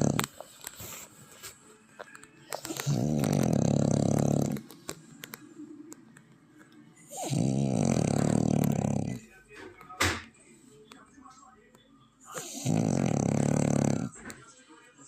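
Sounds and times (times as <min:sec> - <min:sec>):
person snoring: 0:00.0 - 0:00.3, 0:02.7 - 0:04.7, 0:07.1 - 0:09.2, 0:12.3 - 0:14.2.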